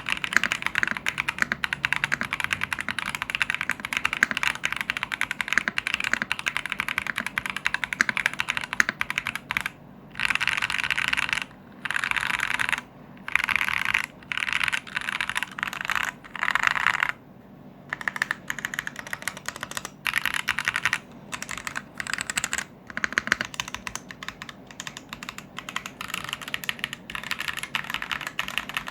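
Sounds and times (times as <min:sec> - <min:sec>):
mechanical keyboard typing: 0:00.0 - 0:17.2, 0:17.9 - 0:28.9.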